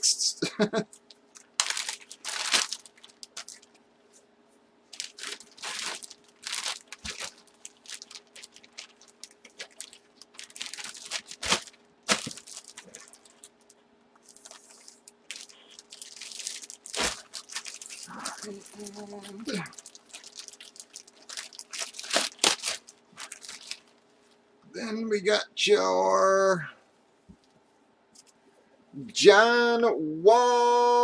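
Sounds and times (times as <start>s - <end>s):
plastic bags crinkling: 1.0s - 3.8s, 4.9s - 24.3s.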